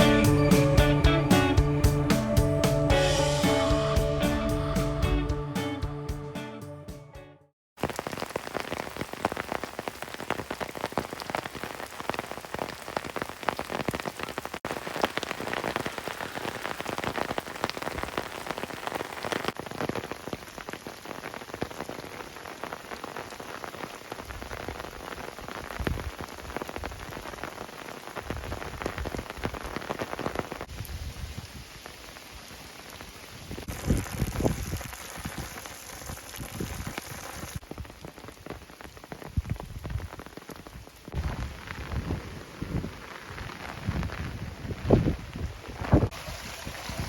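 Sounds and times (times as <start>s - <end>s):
dull low thumps: 0.0s - 7.2s
raindrops ticking: 7.8s - 30.7s
steady rain falling: 7.8s - 47.0s.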